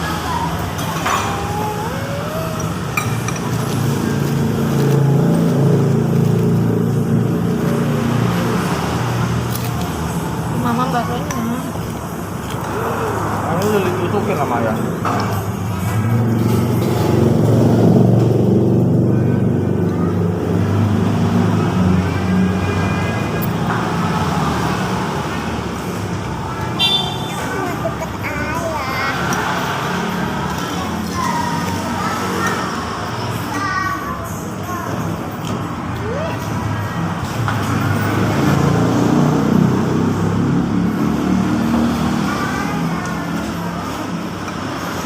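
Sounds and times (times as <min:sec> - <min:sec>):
vehicle engine rumbling: 0:00.0 - 0:32.2
traffic noise: 0:00.0 - 0:45.0.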